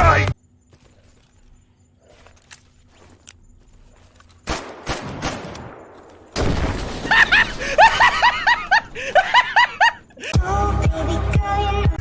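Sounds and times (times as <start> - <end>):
pistol gunshots: 4.4 - 7.6.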